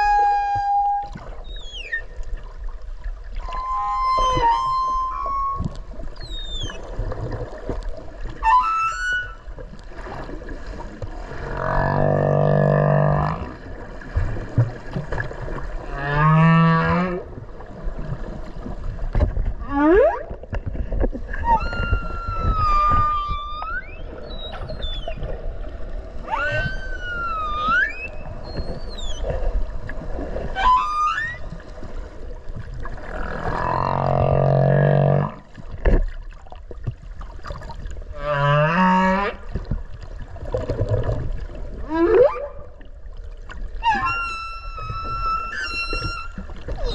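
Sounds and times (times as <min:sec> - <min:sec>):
low whale moans: 0:00.0 - 0:02.0, 0:03.4 - 0:06.8, 0:11.3 - 0:13.8, 0:15.6 - 0:17.4, 0:19.5 - 0:20.6, 0:21.3 - 0:25.4, 0:26.2 - 0:29.6, 0:32.9 - 0:35.6, 0:41.7 - 0:42.9, 0:43.7 - 0:46.9
whistling glides and squeals: 0:00.0 - 0:02.1, 0:03.4 - 0:06.8, 0:08.4 - 0:09.5, 0:21.4 - 0:25.3, 0:26.3 - 0:29.4, 0:30.6 - 0:31.5, 0:43.8 - 0:46.9
humpback whale song underwater: 0:00.0 - 0:46.9.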